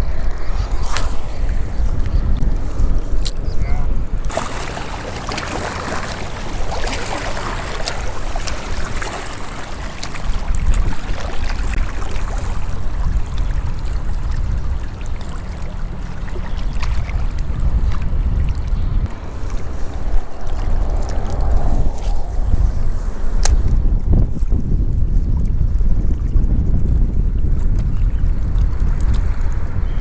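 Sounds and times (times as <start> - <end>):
wind buffeting microphone: 0.0 - 30.0
running or lapping water: 4.2 - 21.8.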